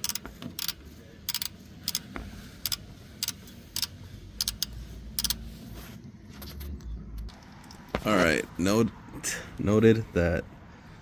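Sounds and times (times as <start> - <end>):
ratchet wrench clicking: 0.0 - 5.4.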